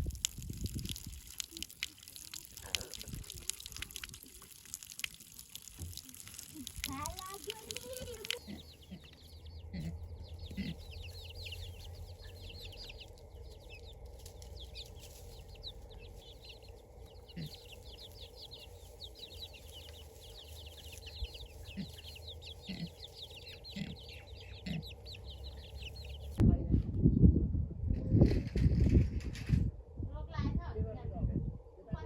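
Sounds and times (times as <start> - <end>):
chicks peeping: 6.8 - 26.4.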